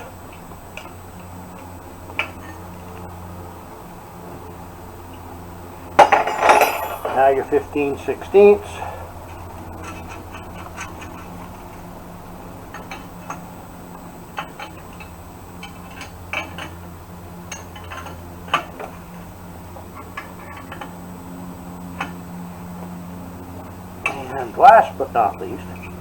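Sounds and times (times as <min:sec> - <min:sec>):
wrench clinking on bolts: 0:06.0 - 0:07.6.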